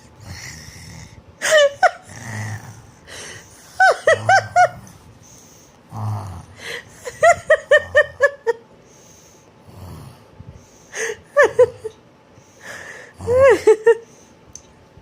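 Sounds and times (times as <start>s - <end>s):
child pretend snoring: 0.0s - 1.2s, 1.8s - 3.5s, 5.9s - 7.0s
child giggling: 3.8s - 4.8s.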